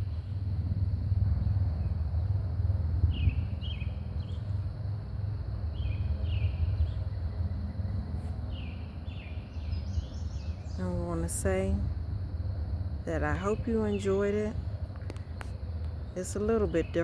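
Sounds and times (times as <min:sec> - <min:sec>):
wind buffeting microphone: 0:00.0 - 0:17.0
bird chirping: 0:03.1 - 0:04.6, 0:05.7 - 0:11.5.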